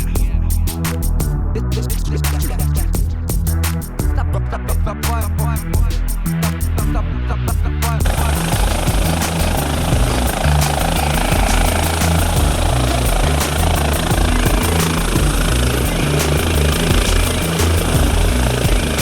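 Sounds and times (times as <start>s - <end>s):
music: 0.0s - 19.0s
helicopter turbine and rotor: 8.1s - 19.0s.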